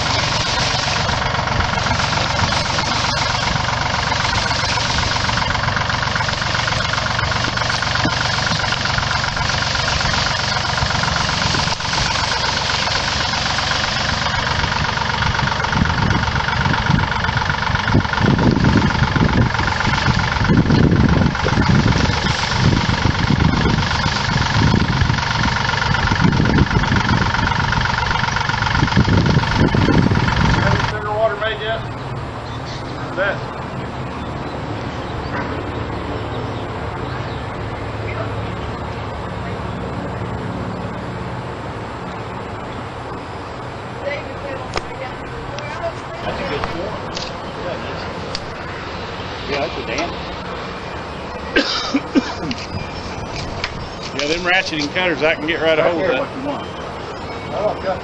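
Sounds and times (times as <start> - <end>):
deep pulses: 0.0 - 32.4
engine running with knocking: 0.0 - 56.0.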